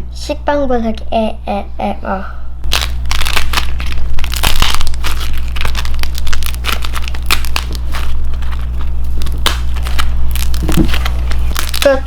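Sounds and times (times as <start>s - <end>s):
steady low hum: 0.0s - 12.0s
hard coating crackling: 2.7s - 12.0s.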